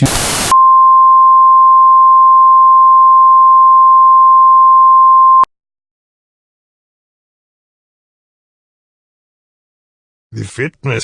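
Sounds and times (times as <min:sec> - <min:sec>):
burst of static: 0:00.0 - 0:00.6
electronic test tone: 0:00.0 - 0:05.5.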